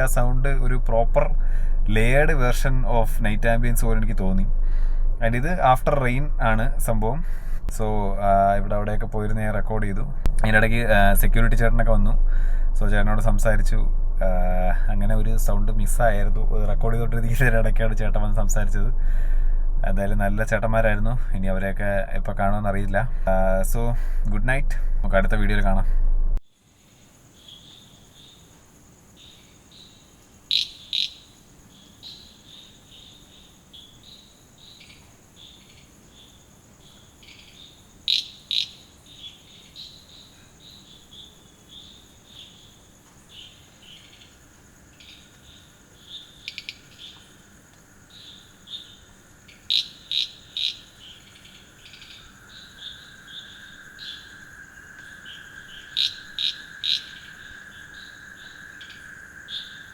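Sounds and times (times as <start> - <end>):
frogs calling: 0.0 - 9.5, 26.5 - 59.9
high-pitched cricket trill: 0.0 - 25.8, 26.4 - 59.9
lower steady trill: 0.0 - 26.4.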